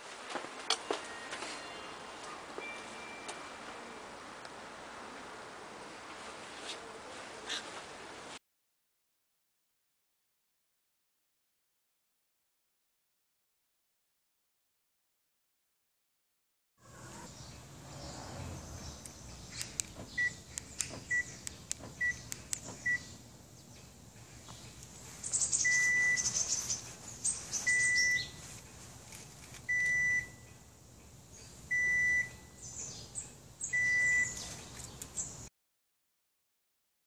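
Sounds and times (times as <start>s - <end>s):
electronic alarm beeps: 2.6s - 3.5s, 21.1s - 21.3s, 22.0s - 22.2s, 22.8s - 23.1s, 25.6s - 26.4s, 27.6s - 28.4s, 29.7s - 30.5s, 31.7s - 32.5s, 33.7s - 34.4s
sharp clicks: 19.0s - 23.0s.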